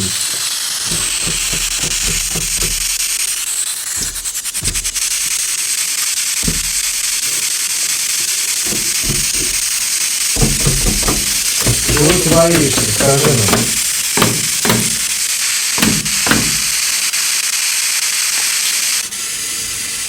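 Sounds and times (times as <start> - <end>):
faint voices: 10.4 - 15.0.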